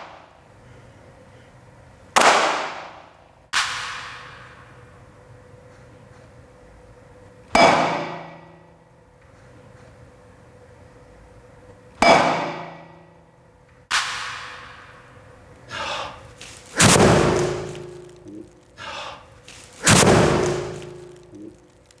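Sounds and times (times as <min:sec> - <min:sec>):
sharp ringing hits on objects: 0:16.4 - 0:18.5, 0:19.5 - 0:21.6.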